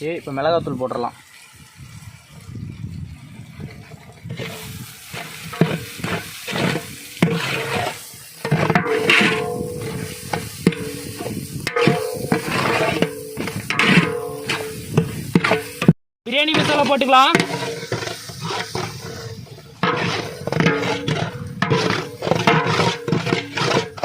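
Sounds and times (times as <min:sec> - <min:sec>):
food sizzling: 0:00.0 - 0:24.0
metal ladle scraping a pot: 0:03.7 - 0:24.0.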